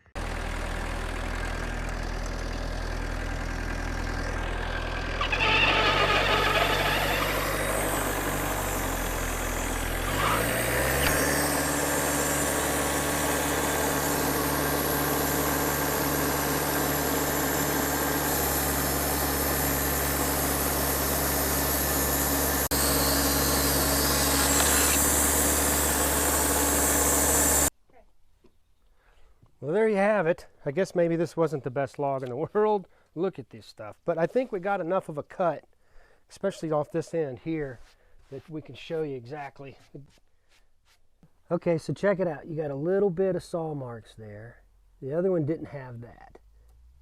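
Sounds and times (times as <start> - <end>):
sawmill engine running: 0.2 - 27.7
band saw hissing through log: 4.4 - 27.7.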